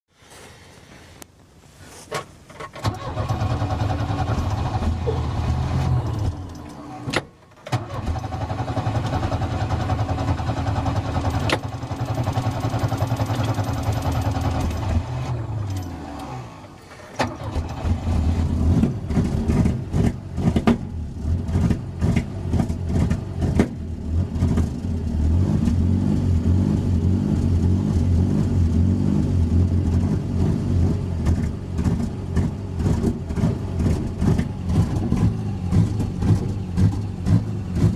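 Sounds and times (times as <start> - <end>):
engine running unevenly: 7.9 - 37.9.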